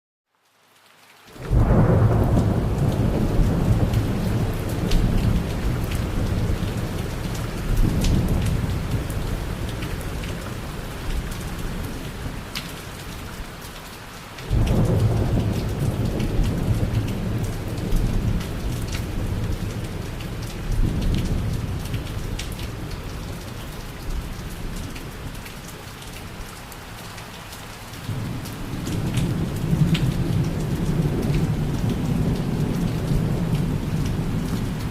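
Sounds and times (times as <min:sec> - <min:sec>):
steady rain: 0:00.3 - 0:34.9
thunder rumbling: 0:01.5 - 0:10.6, 0:14.5 - 0:24.8, 0:28.0 - 0:34.9.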